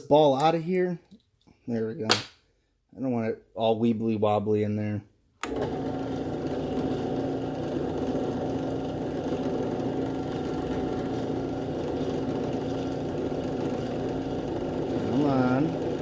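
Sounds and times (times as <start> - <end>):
power drill running: 5.4 - 16.0.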